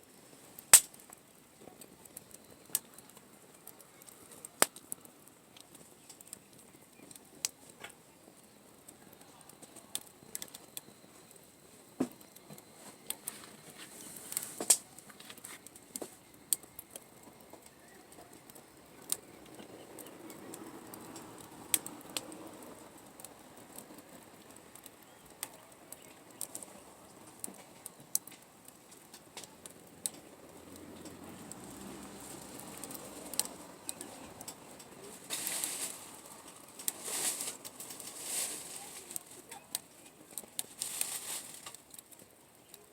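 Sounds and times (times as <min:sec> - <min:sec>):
campfire crackling and popping: 0:00.0 - 0:42.9
soft background rush: 0:00.2 - 0:41.6.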